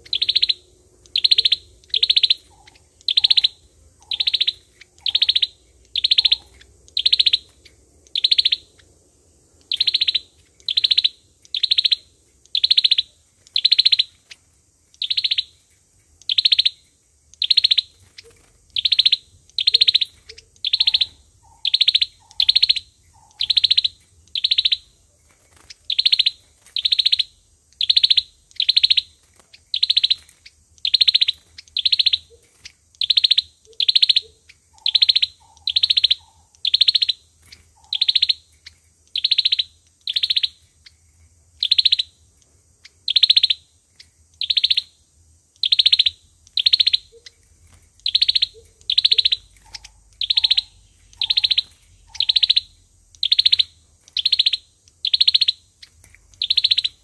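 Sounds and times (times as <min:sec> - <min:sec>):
songbird short high call: 0:48.0 - 0:55.6.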